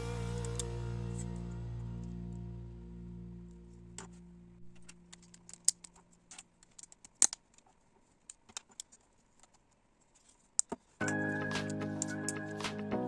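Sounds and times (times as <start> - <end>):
background music: 0.0 - 3.2, 11.0 - 13.0
plastic toy bricks clicking: 5.1 - 9.6.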